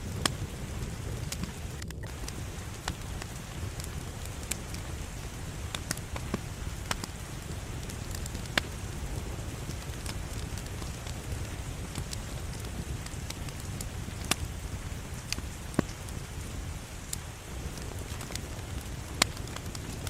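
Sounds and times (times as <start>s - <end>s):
fire crackling and popping: 0.0s - 20.0s
fire rumbling: 0.0s - 20.0s.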